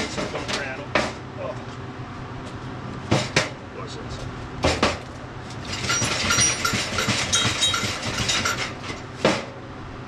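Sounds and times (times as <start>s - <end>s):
suspension creaking and squeaking: 5.4s - 9.1s
sharp metal clank: 5.7s - 9.4s.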